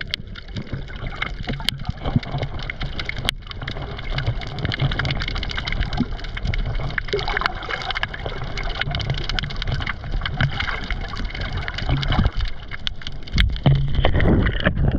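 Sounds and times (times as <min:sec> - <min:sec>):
breathing bubbles: 0:00.0 - 0:14.9
crackle of tiny clicks: 0:00.0 - 0:14.9
underwater water rumble: 0:00.0 - 0:14.9.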